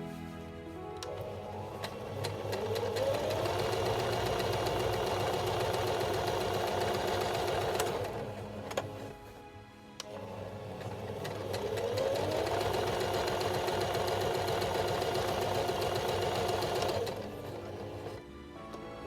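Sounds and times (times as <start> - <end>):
sewing machine motor whining: 10.1 - 18.2.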